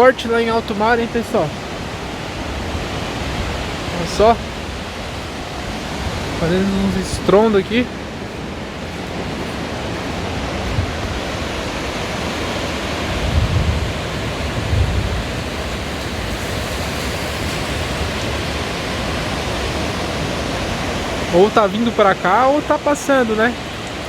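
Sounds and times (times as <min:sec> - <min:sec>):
steady rushing noise: 0:00.0 - 0:24.0
distant thunder rumbling: 0:10.2 - 0:21.2.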